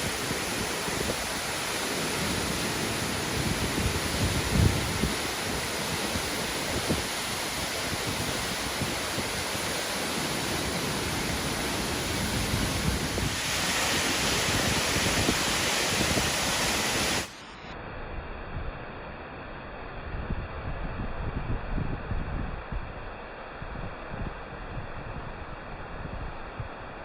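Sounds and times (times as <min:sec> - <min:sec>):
waterfall rushing: 0:00.0 - 0:17.4.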